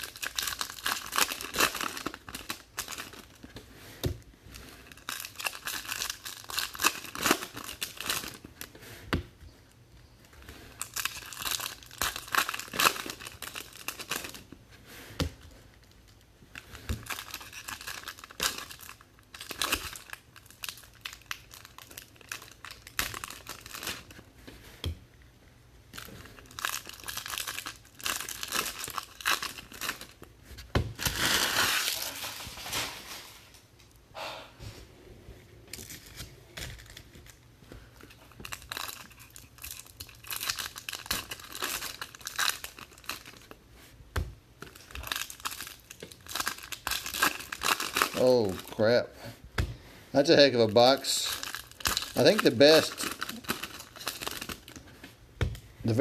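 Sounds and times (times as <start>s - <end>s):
foil wrappers crinkling and tearing: 0.0s - 3.5s, 4.8s - 8.6s, 10.7s - 14.6s, 16.1s - 24.2s, 26.0s - 30.3s, 31.0s - 33.6s, 35.7s - 37.4s, 38.0s - 43.6s, 44.6s - 49.0s, 50.2s - 55.0s.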